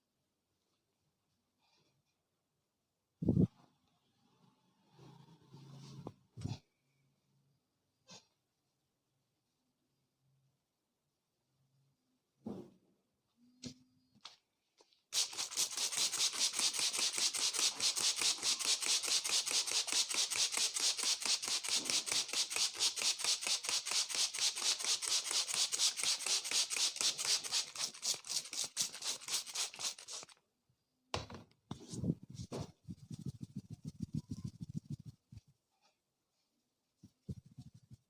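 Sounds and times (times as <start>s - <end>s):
hands scratching hair and scalp: 15.2s - 30.4s, 31.7s - 35.6s, 37.0s - 38.0s.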